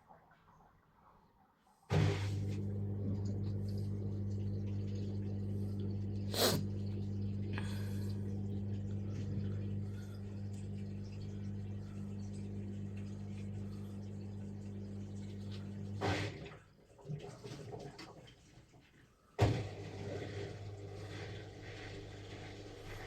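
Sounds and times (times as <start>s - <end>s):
washing machine humming: 1.9s - 23.0s.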